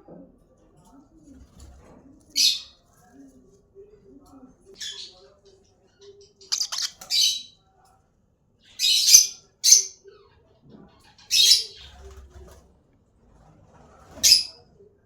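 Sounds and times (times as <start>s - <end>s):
parrots calling: 6.4s - 7.6s, 8.8s - 10.0s, 11.2s - 11.8s.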